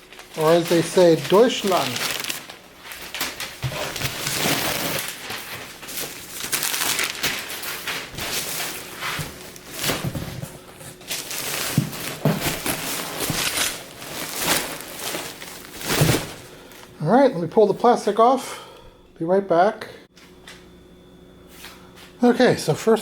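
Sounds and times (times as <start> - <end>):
plastic and cardboard rustling: 0.0 - 16.9.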